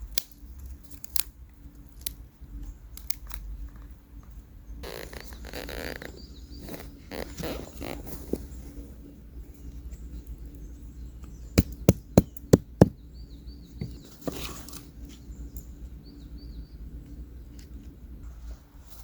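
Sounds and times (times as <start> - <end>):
birds chirping faintly: 2.4 - 18.2
sharp wooden knocks: 11.6 - 13.0.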